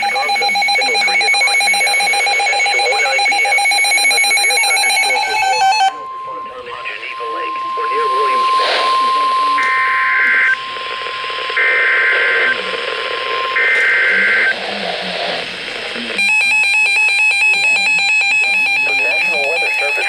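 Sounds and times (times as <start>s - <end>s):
screeching digital alert data: 0.0s - 10.8s
rapid electronic beeping alert: 0.0s - 14.6s.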